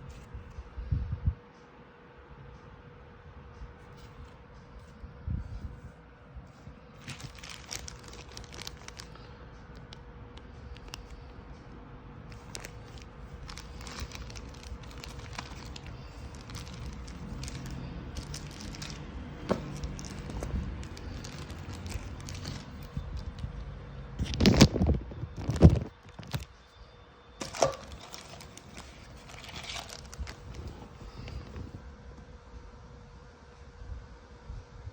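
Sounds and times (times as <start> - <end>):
packaging crinkling and rustling: 6.9 - 10.0, 10.7 - 11.3, 12.3 - 23.6, 24.2 - 26.6, 27.4 - 31.8.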